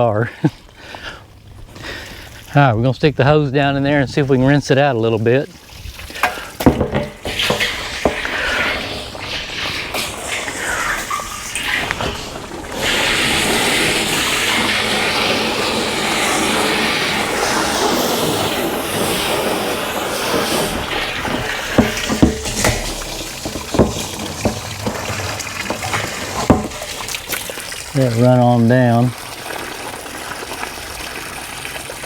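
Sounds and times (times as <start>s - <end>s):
water rushing from hose into tank: 4.2s - 32.0s
sharp knocks: 6.2s - 8.5s, 20.6s - 27.4s.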